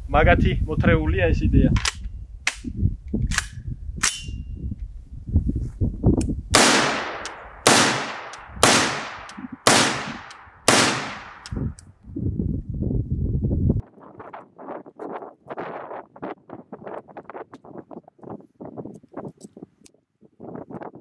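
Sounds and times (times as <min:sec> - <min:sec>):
wind rumble on microphone: 0:00.0 - 0:21.0
sharp clicks: 0:06.2 - 0:11.9
rifle shots ringing: 0:06.6 - 0:11.6.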